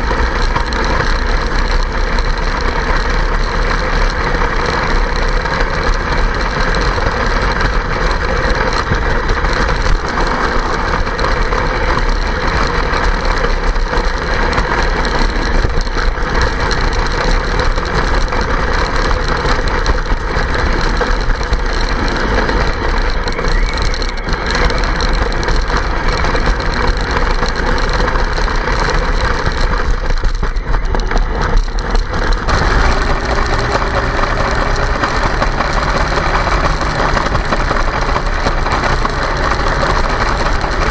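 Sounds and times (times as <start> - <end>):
toy snowcat mechanical rattle: 0.0 - 40.9.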